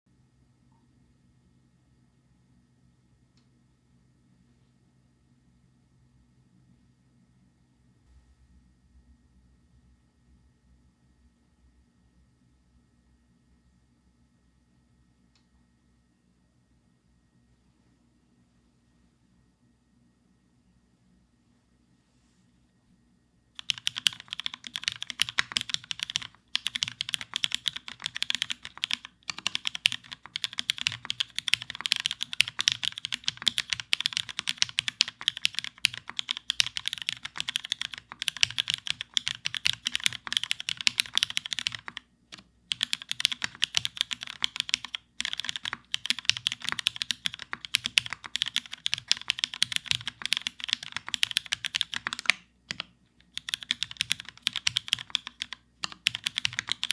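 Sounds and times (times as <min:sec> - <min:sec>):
fast mechanical keyboard typing: 0:23.6 - 0:56.9.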